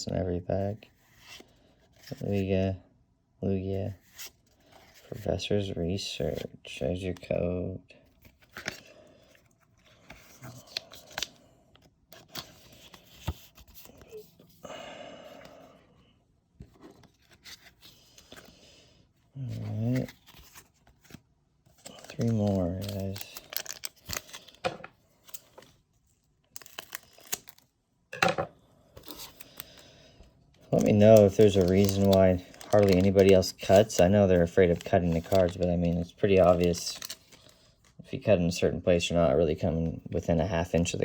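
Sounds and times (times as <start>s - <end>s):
trading cards being handled: 8.0s - 14.6s, 16.6s - 18.7s, 19.4s - 27.6s, 29.0s - 29.9s, 30.5s - 38.0s
wrapper rustling: 19.5s - 27.7s, 30.6s - 37.8s.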